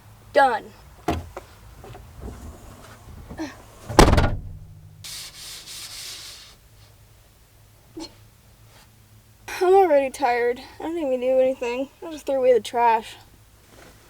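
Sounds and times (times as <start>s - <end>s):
rustling: 1.0s - 6.6s, 13.6s - 14.0s
loud thump: 3.1s - 5.0s.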